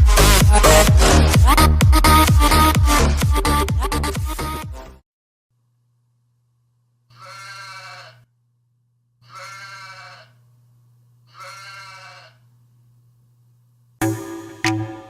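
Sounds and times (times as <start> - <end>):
sheep bleating: 7.1 - 8.3, 9.2 - 10.4, 11.3 - 12.4
faint low hum: 8.2 - 14.0.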